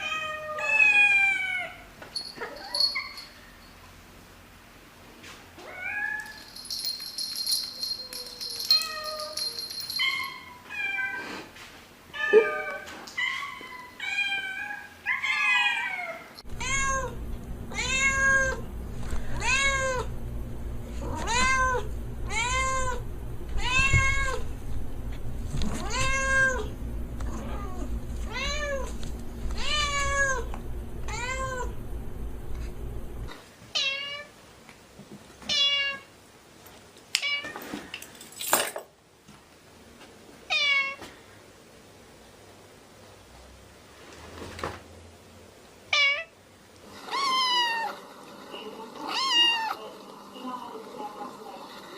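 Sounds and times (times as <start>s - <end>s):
cats meowing: 12.1s - 18.6s, 19.3s - 20.1s, 21.0s - 23.0s, 23.6s - 24.5s, 25.7s - 28.9s, 29.5s - 30.5s, 46.9s - 48.0s
steady low hum: 16.4s - 33.4s.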